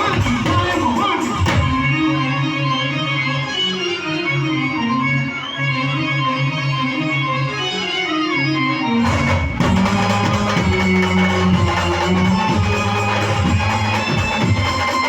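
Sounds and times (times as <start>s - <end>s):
held keyboard notes: 0.0s - 15.0s
live band playing: 0.0s - 15.0s.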